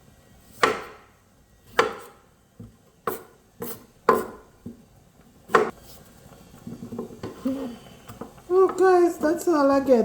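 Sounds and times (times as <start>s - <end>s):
knife chopping on cutting board: 0.4s - 1.1s, 1.7s - 2.2s, 3.0s - 4.8s, 5.5s - 5.8s.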